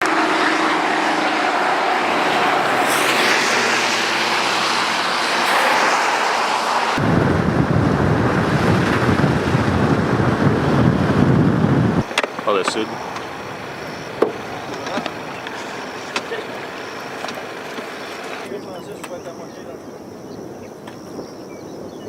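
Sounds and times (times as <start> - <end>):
wind rushing on microphone: 1.2 - 15.6.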